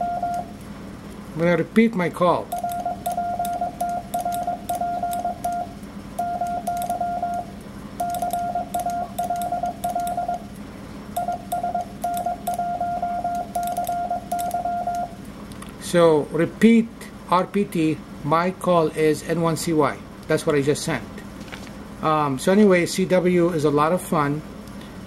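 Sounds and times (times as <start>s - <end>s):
morse code beeps: 0.0s - 0.5s, 2.5s - 10.5s, 11.2s - 15.2s
sharp key clicks: 2.5s - 5.6s, 6.2s - 7.4s, 8.0s - 10.4s, 11.2s - 12.7s, 13.3s - 15.1s.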